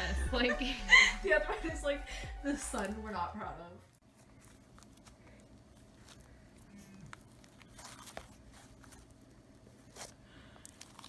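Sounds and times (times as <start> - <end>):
sticky slime crackling and tearing: 4.2 - 11.0.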